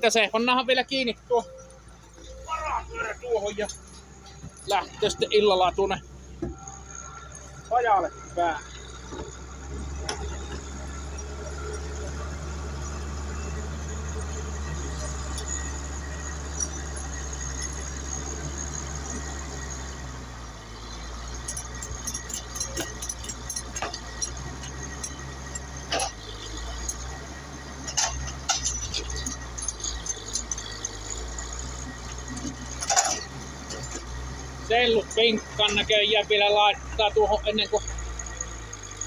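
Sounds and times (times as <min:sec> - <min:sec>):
vehicle engine humming: 0:00.0 - 0:39.0
metallic clinks and knocks: 0:03.4 - 0:05.5, 0:06.2 - 0:20.0, 0:20.8 - 0:36.0.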